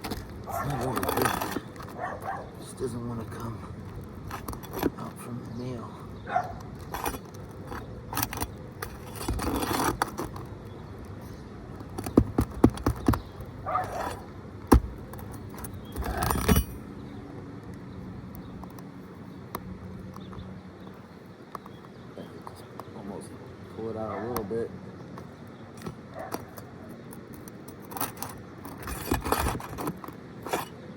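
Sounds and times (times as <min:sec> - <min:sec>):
metal bar scraping shingles: 0:00.0 - 0:02.2, 0:06.7 - 0:10.5, 0:13.8 - 0:16.8, 0:27.7 - 0:30.8.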